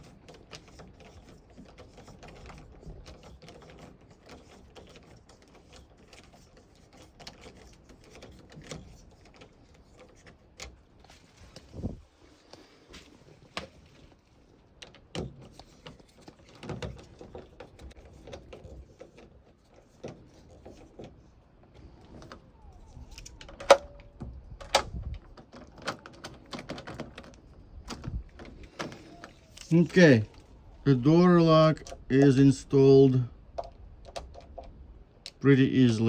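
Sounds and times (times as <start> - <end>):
metal lock parts clicking: 22.2 - 30.5.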